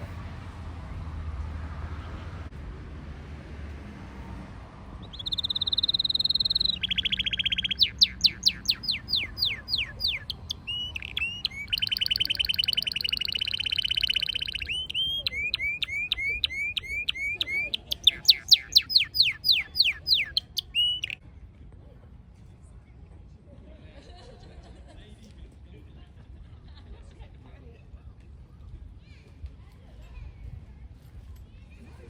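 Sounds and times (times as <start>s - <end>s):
canary singing trills and whistles: 5.0s - 21.2s.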